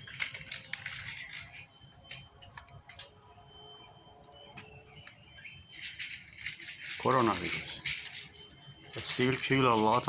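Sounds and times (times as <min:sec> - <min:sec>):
insect drone: 0:00.0 - 0:10.0
rustling: 0:04.6 - 0:10.0.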